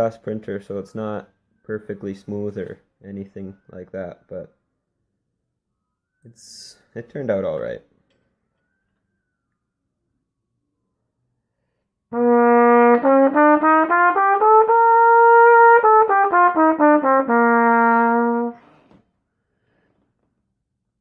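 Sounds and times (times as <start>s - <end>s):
trumpet playing a scale: 12.1s - 18.8s.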